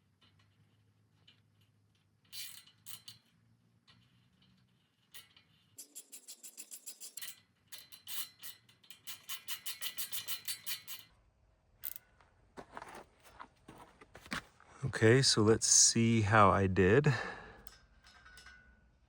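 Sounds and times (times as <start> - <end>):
ratchet wrench clicking: 2.3 - 3.3, 5.1 - 11.1.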